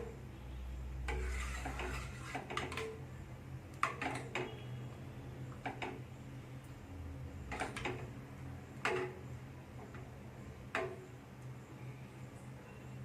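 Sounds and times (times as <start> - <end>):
metal utensil scraping cooking pot: 0.9 - 3.1, 3.8 - 4.7, 7.5 - 8.1, 8.8 - 10.1.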